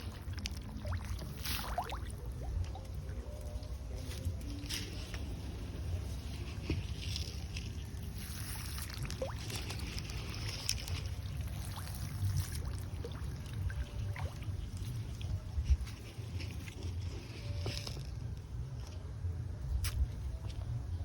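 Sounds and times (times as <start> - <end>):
fish splashing at water surface: 0.0 - 3.0, 6.6 - 15.3
steady low rumble: 0.0 - 21.0.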